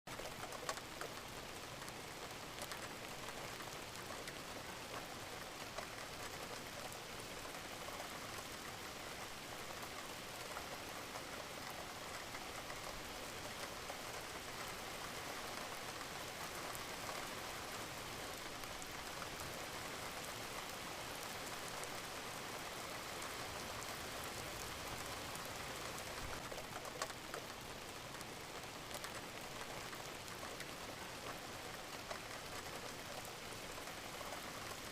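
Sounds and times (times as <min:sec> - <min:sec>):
steady rain falling: 0:00.0 - 0:34.9.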